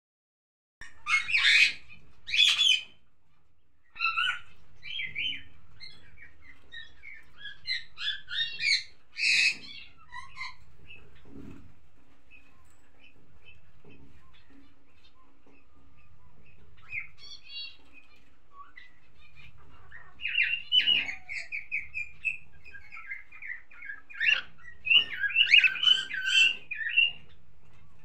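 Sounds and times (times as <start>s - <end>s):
cockatiel screeching: 1.0s - 2.9s, 7.4s - 10.6s, 24.2s - 26.9s.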